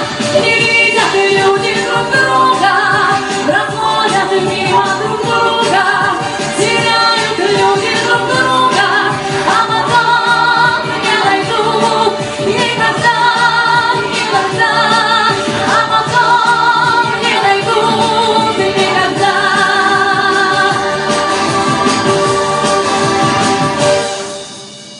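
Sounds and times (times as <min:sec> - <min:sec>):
woman singing with vibrato: 0:00.0 - 0:23.4
pop song accompaniment: 0:00.0 - 0:24.9.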